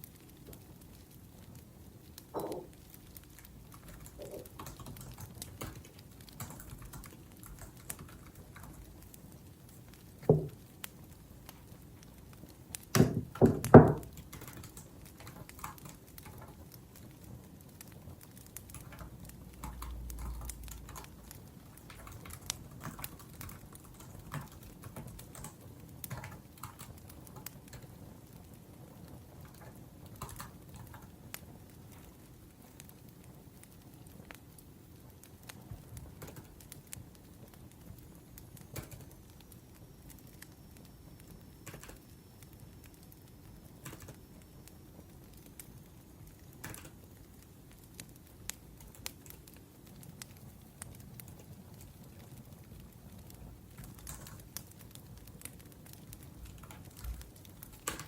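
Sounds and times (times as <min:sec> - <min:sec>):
laptop keyboard typing: 0:03.7 - 0:08.8, 0:12.9 - 0:16.5, 0:18.6 - 0:27.8, 0:30.2 - 0:31.1, 0:36.1 - 0:36.6, 0:38.6 - 0:39.2, 0:41.6 - 0:42.0, 0:43.8 - 0:44.2, 0:46.6 - 0:47.0, 0:53.8 - 0:54.6, 0:56.4 - 0:58.0.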